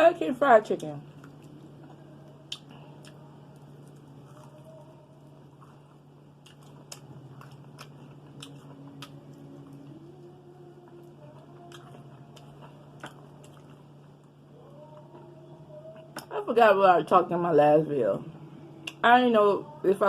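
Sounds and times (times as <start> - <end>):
steady low hum: 0.0 - 20.0
person chewing food: 1.1 - 16.3.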